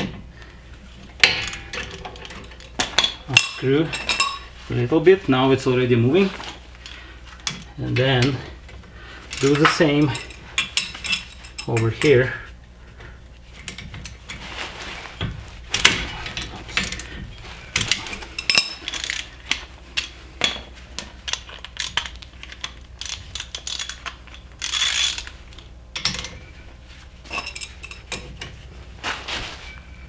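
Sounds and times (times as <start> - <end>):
ratchet wrench clicking: 17.8 - 19.3, 21.3 - 25.3.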